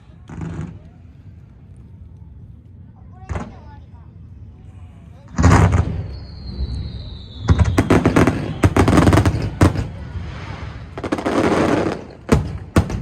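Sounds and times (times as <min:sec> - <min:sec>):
loud fireworks bangs: 0:05.3 - 0:13.0
fireworks cracking and crackling: 0:05.4 - 0:13.0.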